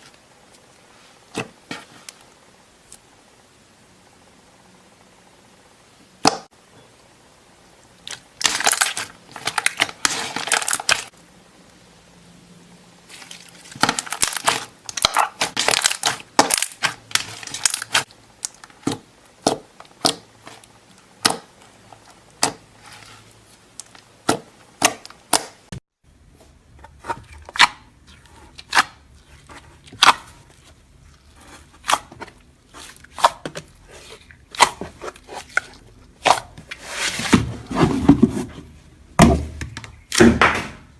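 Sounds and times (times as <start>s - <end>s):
slime crackling and popping: 8.0s - 11.1s, 13.1s - 19.0s.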